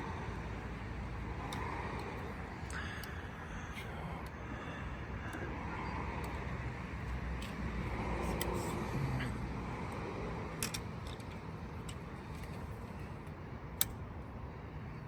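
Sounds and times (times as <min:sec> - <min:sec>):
low background hum: 0:00.0 - 0:15.0
small engine parts clicking: 0:10.6 - 0:12.9.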